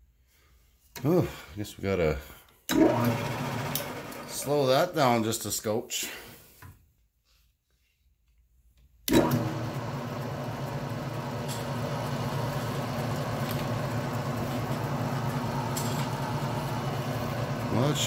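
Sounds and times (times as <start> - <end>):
lathe motor humming: 2.8 - 4.4, 9.1 - 18.0.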